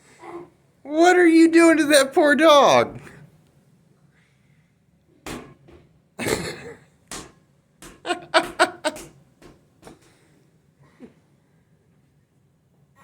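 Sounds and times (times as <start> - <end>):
ball bouncing on hard floor: 5.2 - 5.9, 7.1 - 10.1.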